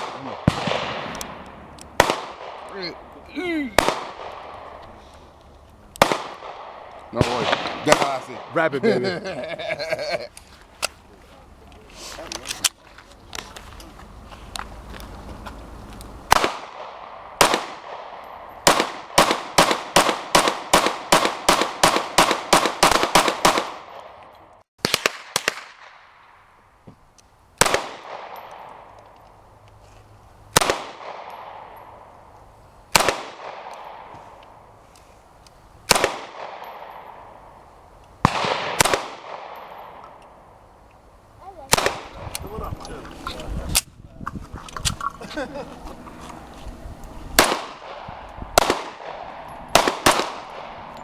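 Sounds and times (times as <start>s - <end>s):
gunshots with long echo: 0.0s - 3.1s, 3.7s - 4.8s, 6.0s - 9.0s, 16.3s - 24.2s, 24.8s - 26.4s, 27.6s - 28.9s, 30.5s - 32.1s, 32.9s - 34.1s, 35.9s - 37.6s, 38.2s - 40.6s, 41.7s - 42.2s, 47.4s - 50.9s.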